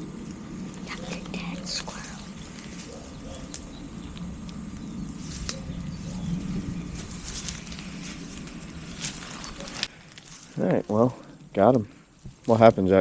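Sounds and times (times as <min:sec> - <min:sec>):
steady low rumble: 0:00.0 - 0:13.0
footsteps crunching through dry leaves: 0:01.9 - 0:03.9, 0:04.8 - 0:10.6.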